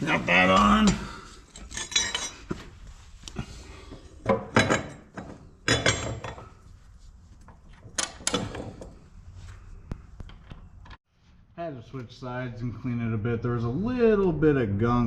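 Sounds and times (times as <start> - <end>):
metal tools clinking and clanking: 0.5 - 2.6, 4.2 - 6.5.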